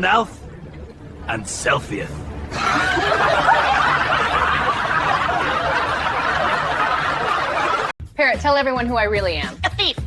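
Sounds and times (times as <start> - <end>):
people laughing together: 0.7 - 7.9.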